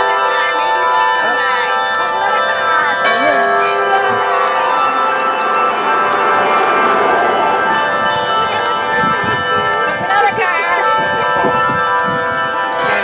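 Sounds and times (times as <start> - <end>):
church bells ringing: 0.0 - 13.0.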